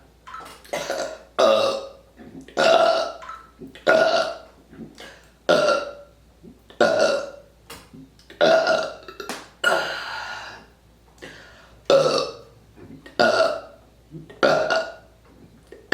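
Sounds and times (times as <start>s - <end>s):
woman belching loudly: 0.7s - 3.2s, 3.8s - 4.4s, 6.8s - 7.4s, 8.4s - 10.0s, 11.9s - 12.4s, 13.2s - 13.7s, 14.4s - 15.0s.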